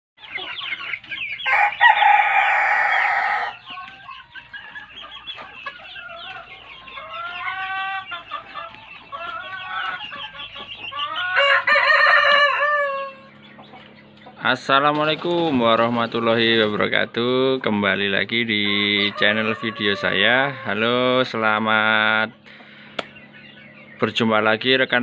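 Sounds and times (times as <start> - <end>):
hens clucking: 0.2 - 25.0
rooster crowing: 1.4 - 3.7, 11.2 - 13.3, 18.6 - 21.0.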